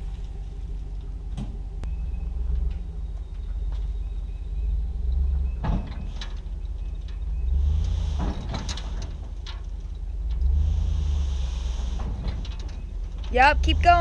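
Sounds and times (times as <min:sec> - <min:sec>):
trailer knocks and rattles: 0:00.0 - 0:14.0
vehicle engine running: 0:00.0 - 0:14.0
hiss of sliding soil: 0:10.8 - 0:12.2.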